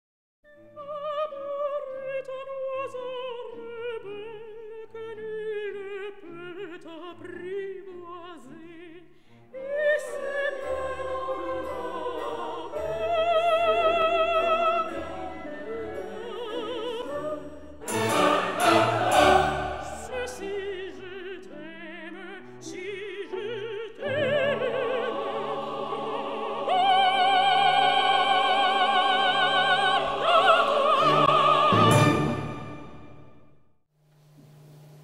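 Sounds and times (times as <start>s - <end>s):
operatic singing with vibrato: 0.7s - 33.4s
orchestral accompaniment: 10.1s - 22.0s, 23.0s - 33.5s.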